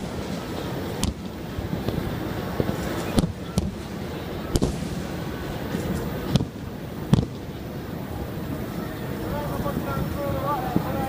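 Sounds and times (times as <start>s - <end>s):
fireworks shells booming: 0.0s - 8.7s
steady low rumble: 0.0s - 11.0s.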